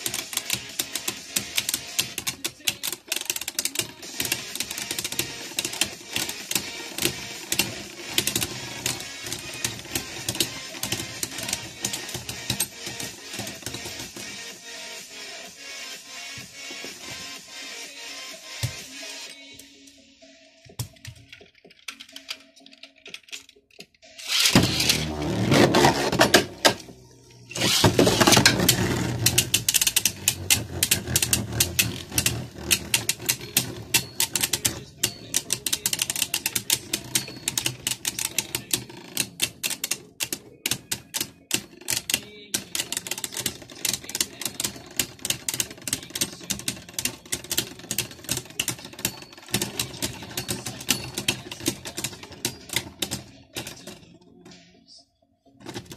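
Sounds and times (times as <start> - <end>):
spinning tops whirring: 24.1 - 38.7
spinning tops clashing clicks: 24.2 - 25.1.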